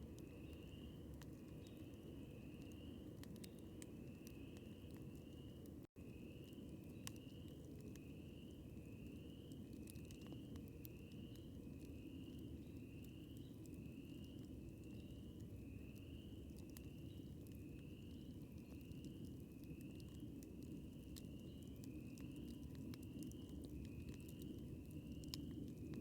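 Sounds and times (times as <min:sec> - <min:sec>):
fire crackles: 0:00.0 - 0:26.0
campfire rushing: 0:06.3 - 0:26.0.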